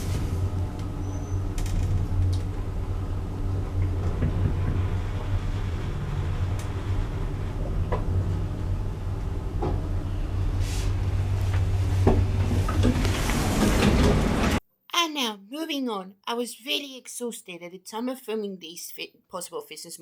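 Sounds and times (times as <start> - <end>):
lift motor hum: 0.0 - 14.6.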